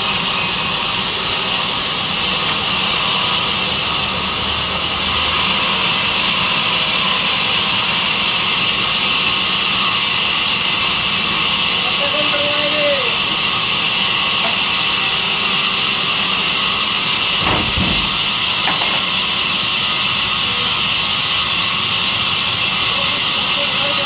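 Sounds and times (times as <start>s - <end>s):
sawmill saw running: 0.0s - 24.0s
knock: 17.4s - 19.1s.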